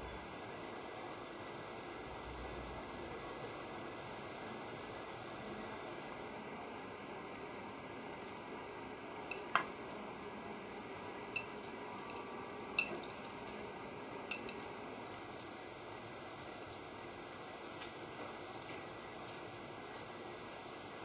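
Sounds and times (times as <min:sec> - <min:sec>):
dishes and utensils clinking: 0:09.3 - 0:09.7, 0:11.4 - 0:13.6, 0:14.3 - 0:14.8.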